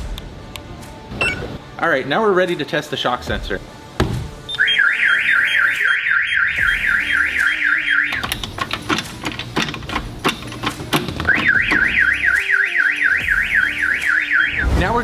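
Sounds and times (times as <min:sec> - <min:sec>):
car alarm warble: 0:04.5 - 0:08.3, 0:11.3 - 0:14.6
rapid clicks and knocks: 0:08.2 - 0:11.5.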